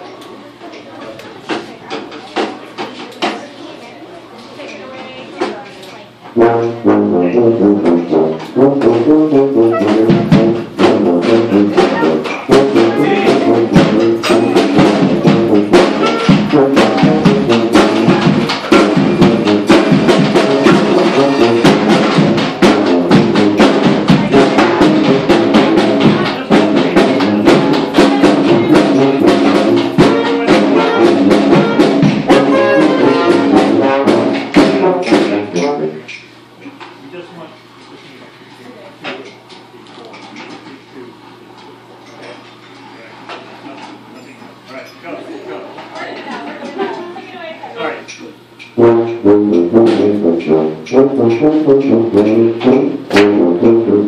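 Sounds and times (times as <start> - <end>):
drums keeping a steady beat: 0.0 - 4.6, 5.2 - 41.9, 45.7 - 54.0
trombones and trumpets playing: 6.3 - 36.1, 48.8 - 54.0.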